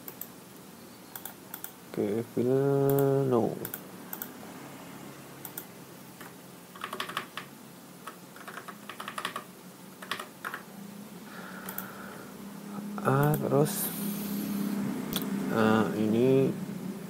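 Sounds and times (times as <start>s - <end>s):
faint steady hum: 0.0s - 17.0s
computer keyboard typing: 5.4s - 10.6s, 11.6s - 11.9s.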